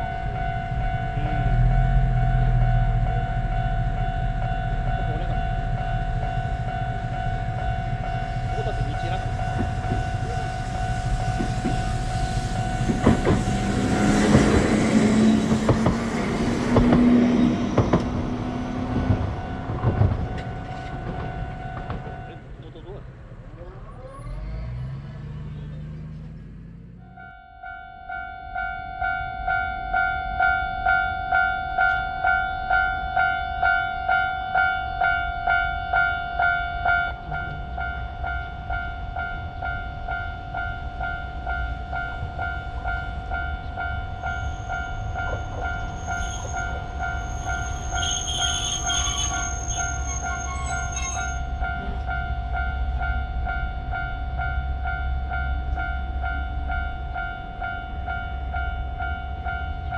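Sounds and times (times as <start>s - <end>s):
level crossing warning bell ringing: 0.0s - 23.0s, 26.8s - 59.9s
train passing with low rumble: 0.0s - 59.9s
high steady tone: 27.0s - 59.9s.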